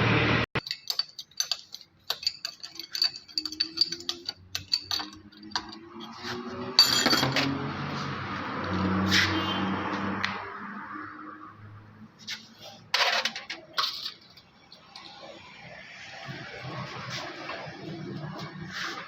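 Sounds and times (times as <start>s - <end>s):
small metal parts clinking: 0.6s - 7.5s, 12.9s - 15.3s.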